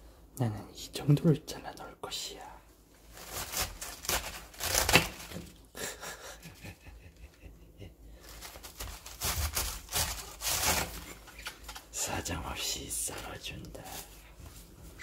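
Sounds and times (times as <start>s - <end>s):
knife cutting cabbage: 3.1s - 5.5s, 8.2s - 11.8s.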